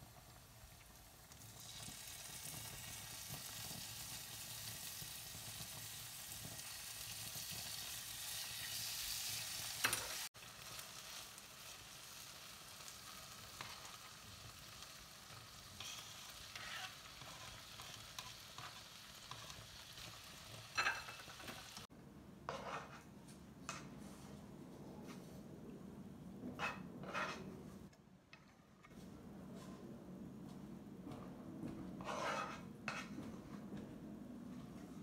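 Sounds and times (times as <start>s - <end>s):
food sizzling in a frying pan: 0.0s - 21.9s.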